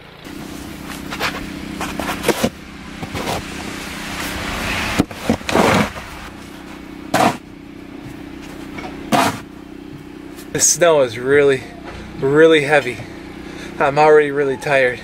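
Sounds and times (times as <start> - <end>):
steady engine hum: 0.0 - 15.0
snow shovel scraping snow: 0.3 - 7.4, 8.4 - 9.5.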